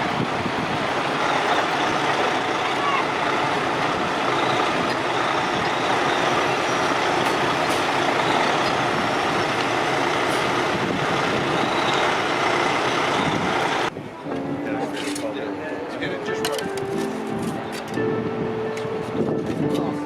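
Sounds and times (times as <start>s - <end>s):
heavy truck engine under load: 0.0s - 14.0s.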